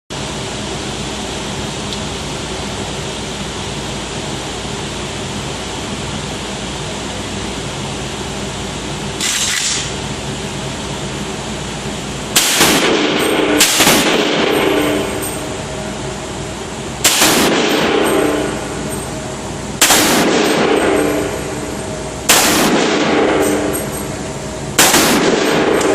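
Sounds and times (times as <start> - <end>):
rifle shots: 12.4 - 15.3, 17.0 - 18.8, 19.8 - 23.9, 24.8 - 25.9
faint gunshot report: 19.8 - 20.8, 22.3 - 23.3, 24.8 - 25.9.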